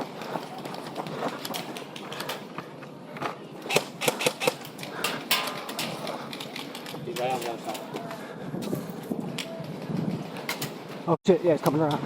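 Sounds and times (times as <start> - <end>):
airsoft gunfire: 3.7 - 4.6.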